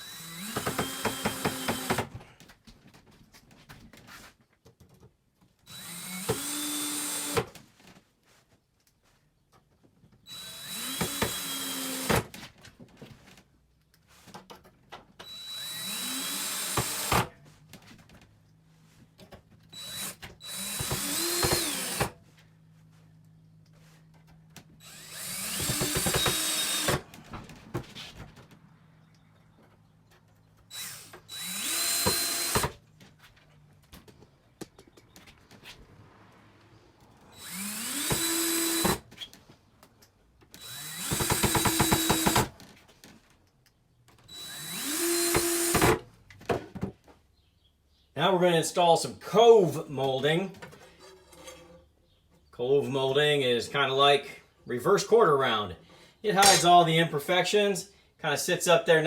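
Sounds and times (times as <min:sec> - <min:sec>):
power drill driving screws: 0:00.0 - 0:02.2, 0:05.7 - 0:07.6, 0:10.3 - 0:12.4, 0:15.2 - 0:17.3, 0:19.7 - 0:22.2, 0:24.8 - 0:27.3, 0:30.7 - 0:32.8, 0:37.3 - 0:39.3, 0:40.5 - 0:42.6, 0:44.2 - 0:46.1, 0:56.4 - 0:56.7.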